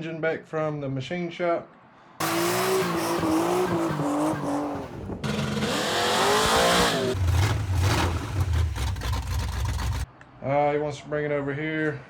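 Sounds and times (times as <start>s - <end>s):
car engine revving: 2.2s - 10.1s.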